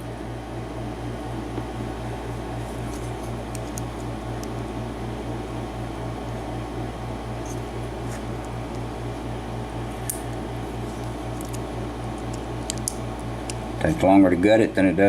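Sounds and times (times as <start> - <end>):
pulsing machine hum: 0.0 - 14.7.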